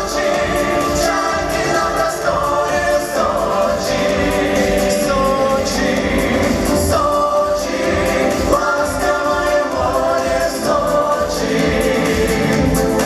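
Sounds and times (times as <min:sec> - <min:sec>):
vocal ensemble singing in harmony: 0:00.0 - 0:13.0.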